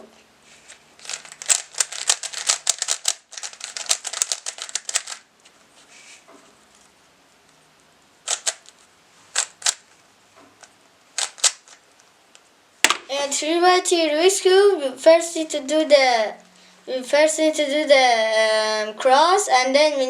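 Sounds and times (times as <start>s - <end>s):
puzzle cube layers clicking: 8.2s - 8.7s, 11.2s - 11.8s.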